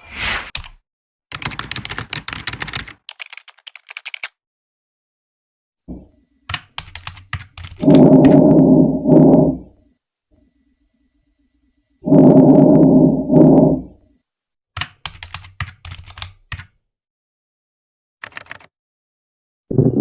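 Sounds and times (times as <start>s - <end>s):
rapid clicking like typing: 0.6s - 4.4s, 6.5s - 8.4s, 14.8s - 16.8s, 18.2s - 18.7s.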